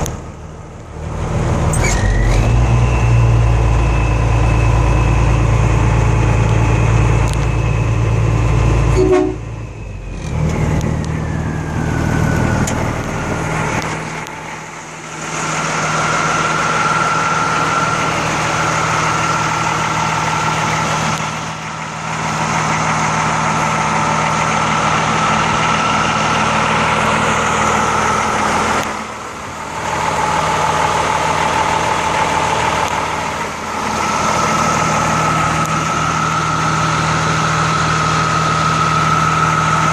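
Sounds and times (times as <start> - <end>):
truck engine running: 0.0 - 39.9
turbocharger whistle: 1.8 - 12.9.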